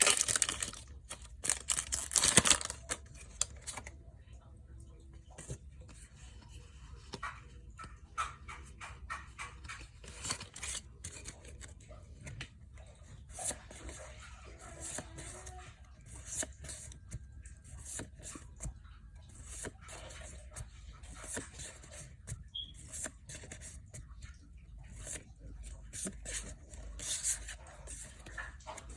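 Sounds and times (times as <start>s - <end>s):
foil pack crinkling and tearing: 0.0s - 3.8s
cards rustling: 0.0s - 3.9s, 9.6s - 12.4s.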